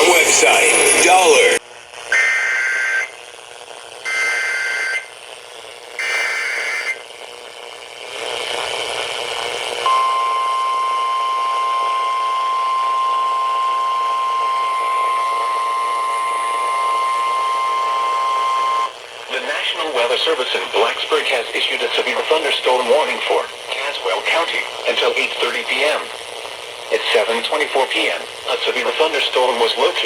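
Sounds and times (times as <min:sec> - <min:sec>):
steady alarm tone: 0:00.0 - 0:03.2, 0:04.1 - 0:05.2, 0:06.0 - 0:07.0, 0:09.8 - 0:19.0.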